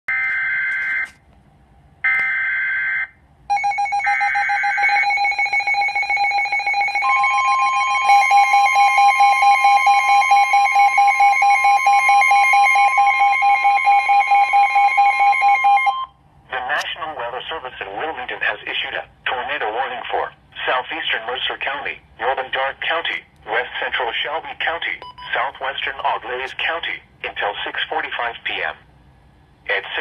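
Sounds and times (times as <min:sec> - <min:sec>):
steady long alert tone: 0:02.0 - 0:28.5
rapidly pulsing alarm tone: 0:02.1 - 0:16.1.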